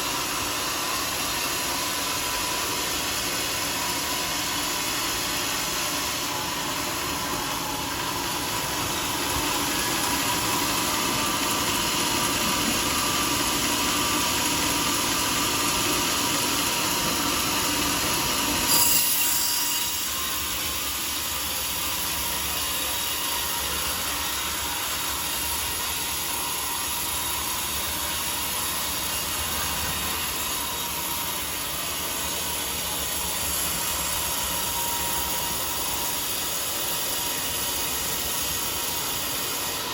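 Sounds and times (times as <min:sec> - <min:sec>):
sawmill saw cutting log: 0:00.0 - 0:39.9
saw screech: 0:18.4 - 0:21.4.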